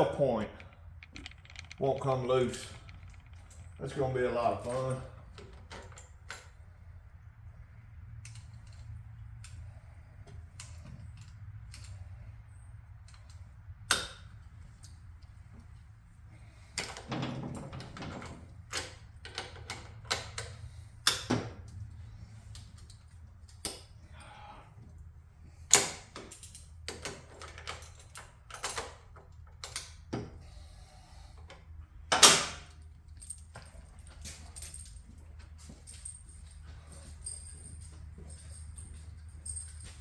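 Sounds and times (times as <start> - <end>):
sharp metal clanks: 0.0 - 6.0
metal hand tools clinking: 0.0 - 6.1.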